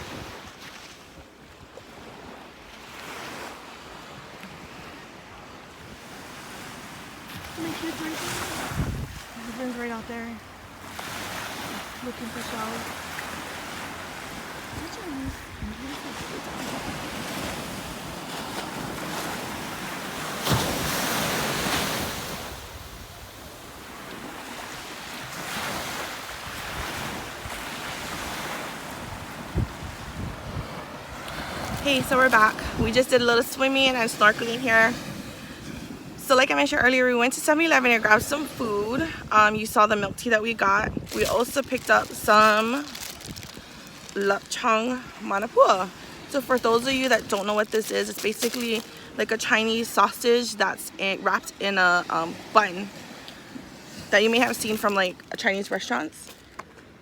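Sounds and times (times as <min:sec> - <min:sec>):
ocean surf on beach: 0:00.0 - 0:57.0
wind rumbling on microphone: 0:07.2 - 0:13.0, 0:13.8 - 0:37.0, 0:38.0 - 0:44.6.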